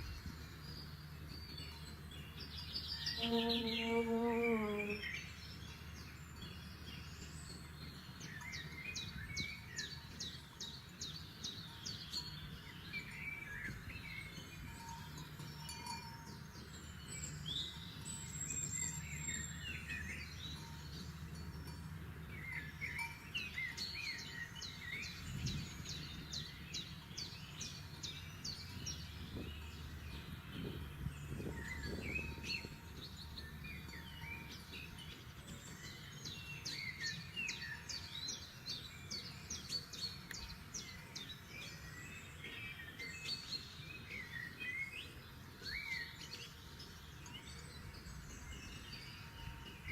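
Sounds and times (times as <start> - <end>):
songbirds singing: 0.0 - 49.9.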